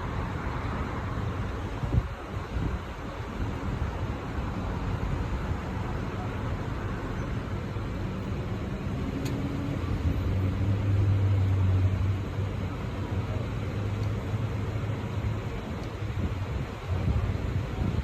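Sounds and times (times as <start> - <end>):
low engine hum: 0.0 - 18.0.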